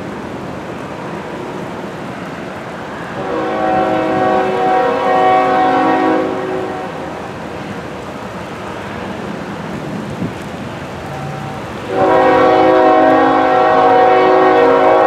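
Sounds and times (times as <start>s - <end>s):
steady rain: 0.0s - 15.0s
locomotive air horn chord: 3.2s - 7.0s, 11.1s - 15.0s.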